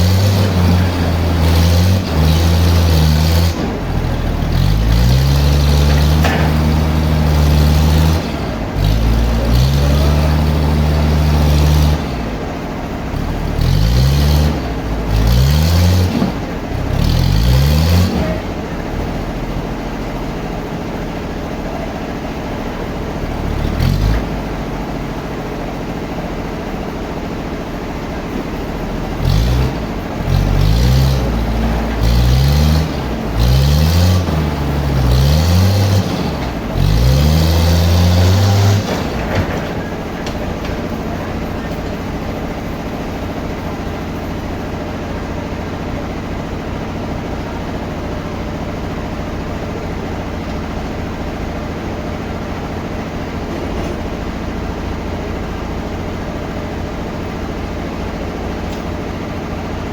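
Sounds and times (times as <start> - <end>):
sawmill machinery running: 0.0 - 59.9.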